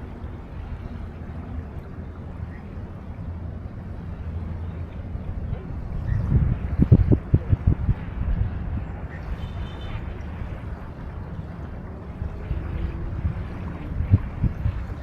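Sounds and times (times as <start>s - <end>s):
river water: 0.0s - 15.0s
wind buffeting microphone: 0.0s - 15.0s.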